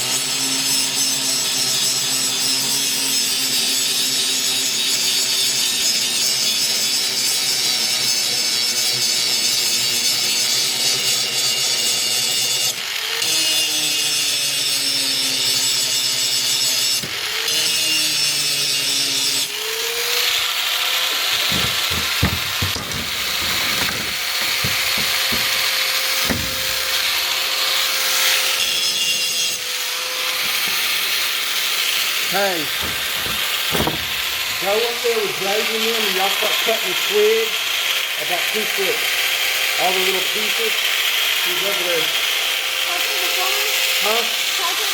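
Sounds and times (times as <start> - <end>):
power grinder grinding metal: 0.0 - 44.9
knocks: 21.4 - 25.6, 26.2 - 26.8, 32.8 - 34.4.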